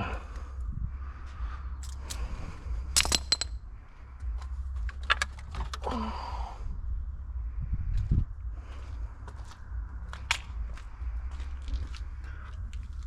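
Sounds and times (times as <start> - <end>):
steady low hum: 0.0 - 13.0
metal items clinking and jangling: 1.8 - 3.6.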